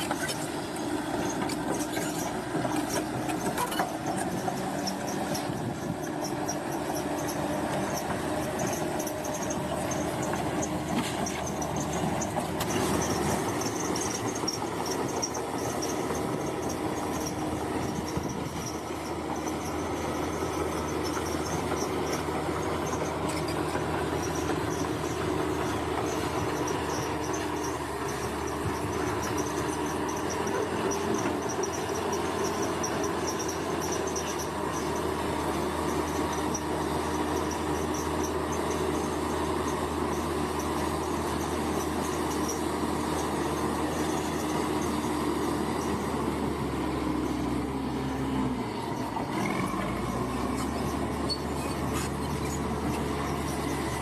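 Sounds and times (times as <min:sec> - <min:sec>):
bulldozer diesel engine: 0:00.0 - 0:54.0.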